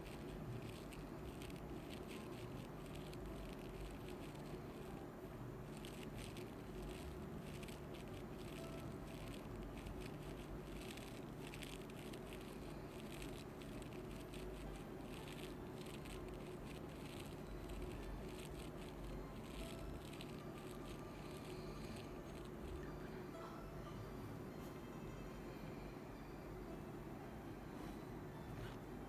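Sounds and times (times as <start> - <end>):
scratching and rustling in ear: 0.0 - 5.0, 5.6 - 22.9
low steady hum: 0.0 - 29.0.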